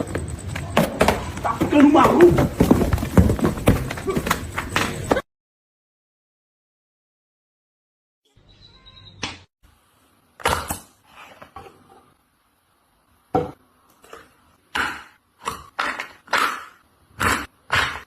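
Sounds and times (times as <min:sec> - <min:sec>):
sharp knocks and clattering hits: 0:00.0 - 0:05.2.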